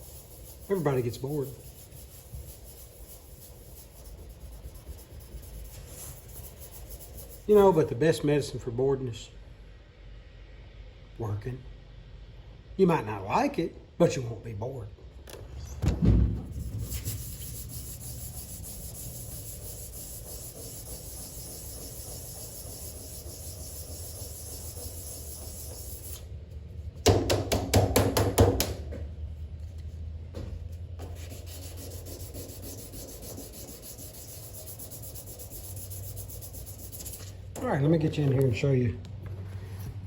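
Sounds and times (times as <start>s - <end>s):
sandpaper rubbing on steel: 0.0s - 7.9s, 16.5s - 26.3s, 31.0s - 37.5s.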